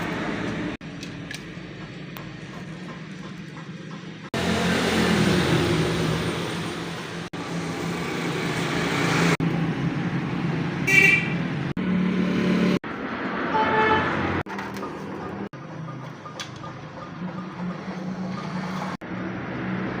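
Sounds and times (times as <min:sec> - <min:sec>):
street traffic noise: 0:00.0 - 0:20.0
vehicle horn toot: 0:10.9 - 0:11.4, 0:13.5 - 0:14.2.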